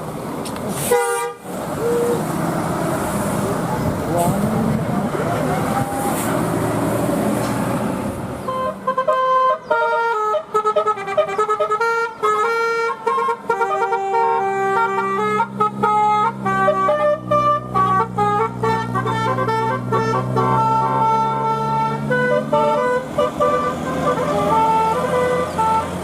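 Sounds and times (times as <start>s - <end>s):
traffic noise: 0.0s - 26.0s
musical air horn tune: 0.8s - 2.2s, 8.5s - 26.0s.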